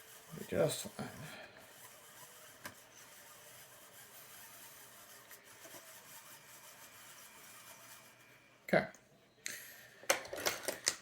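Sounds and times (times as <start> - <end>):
faint rubbing: 0.0 - 8.7.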